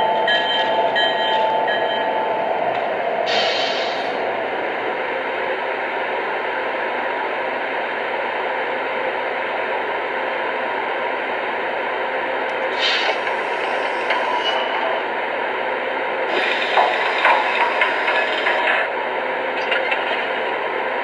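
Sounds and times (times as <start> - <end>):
model train running hiss: 3.3 - 4.2, 12.7 - 14.6, 16.3 - 18.6.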